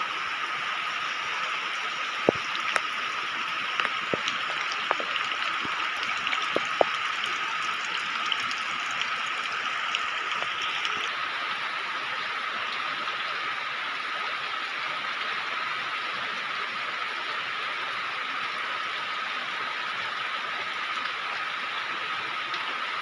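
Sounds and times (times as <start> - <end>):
steady rain falling: 0.0 - 23.0
drops tapping close by: 2.2 - 2.9, 3.7 - 7.0.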